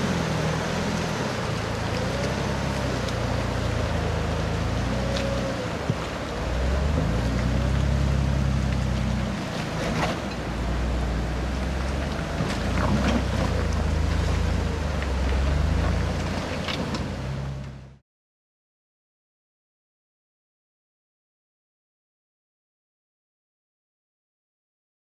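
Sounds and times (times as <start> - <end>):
engine running at low revs: 0.0 - 18.0
water rushing and splashing: 0.0 - 18.0.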